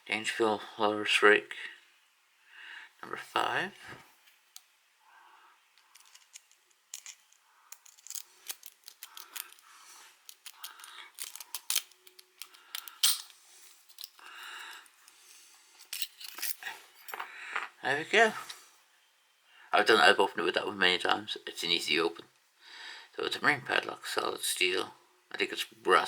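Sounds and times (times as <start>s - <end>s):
lock pick scraping and clicking: 5.8s - 9.6s, 10.2s - 13.3s.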